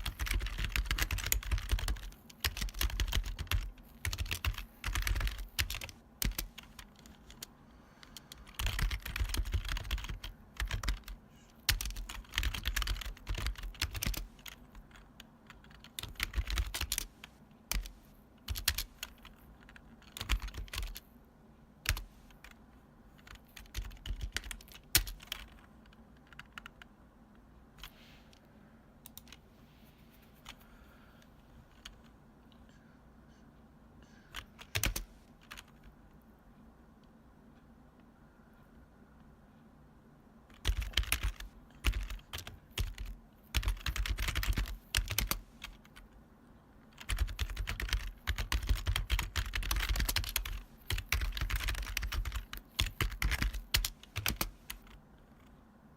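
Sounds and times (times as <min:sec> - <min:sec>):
computer keyboard typing: 0:00.0 - 0:21.1, 0:21.8 - 0:27.0, 0:29.0 - 0:29.4, 0:34.2 - 0:36.0, 0:40.5 - 0:46.2, 0:46.8 - 0:55.5.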